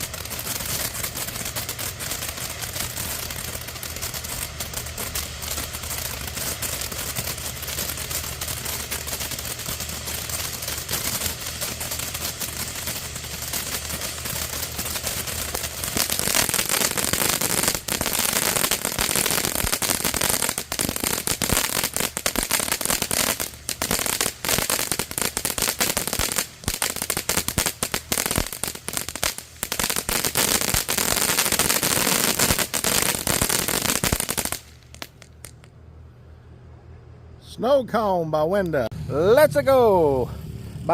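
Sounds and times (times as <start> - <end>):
fountain firework crackling: 0.0 - 35.7.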